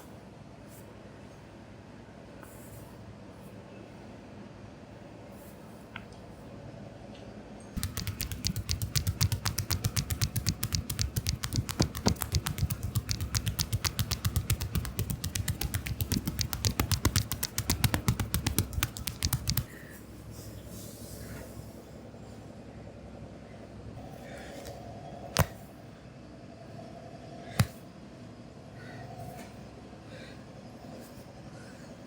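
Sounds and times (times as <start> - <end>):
hands slapping body in massage: 7.8 - 19.7, 25.4 - 25.6.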